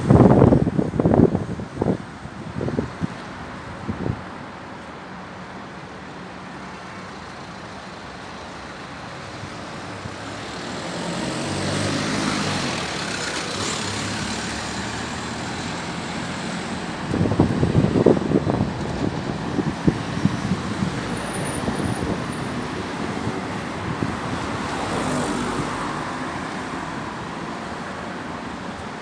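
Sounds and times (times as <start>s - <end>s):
wind noise: 0.0s - 4.6s, 9.1s - 29.0s
motor vehicle passing: 10.3s - 26.5s.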